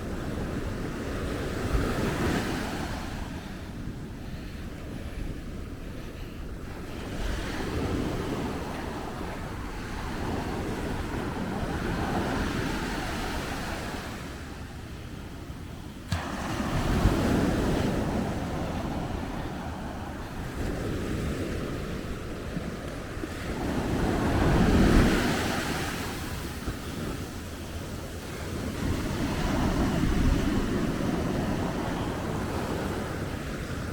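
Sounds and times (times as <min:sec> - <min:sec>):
ocean surf breaking: 0:15.7 - 0:33.9.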